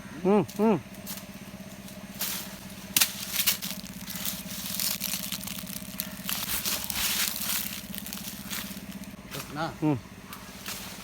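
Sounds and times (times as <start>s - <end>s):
crunching and chewing guava: 2.5s - 9.5s.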